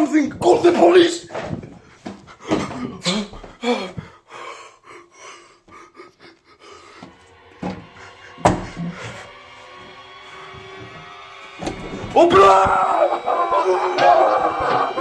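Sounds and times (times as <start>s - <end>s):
man breathing heavily: 1.6s - 11.1s.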